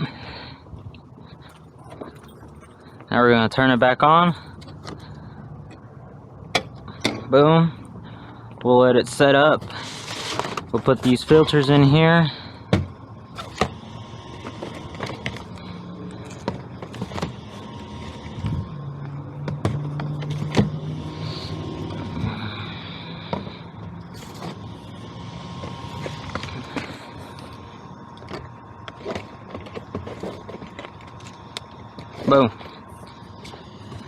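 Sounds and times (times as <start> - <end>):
knocks and scrapes: 28.2 - 31.4.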